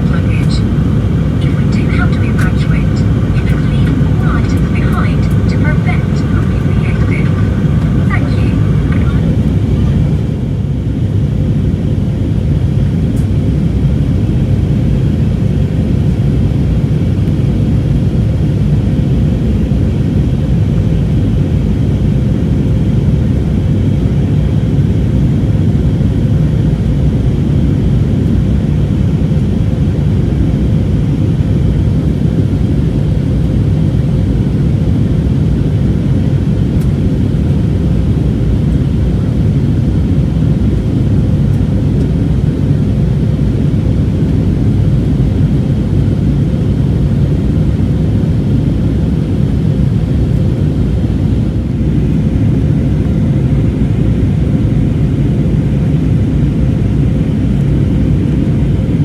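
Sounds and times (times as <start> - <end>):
airplane cabin rumble: 0.0 - 59.0
faint steady hum: 0.0 - 59.0.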